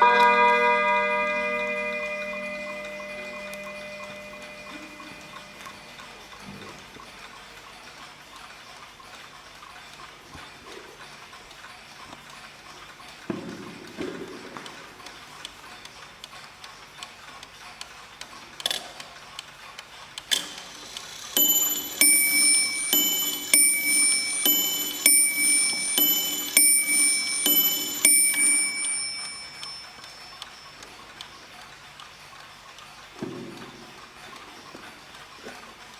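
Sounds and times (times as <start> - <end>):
clock striking two-tone chime: 0.0 - 6.3, 20.5 - 31.3
clock ticking: 0.0 - 7.3, 20.2 - 32.9
clock mechanism clicks: 1.4 - 35.9.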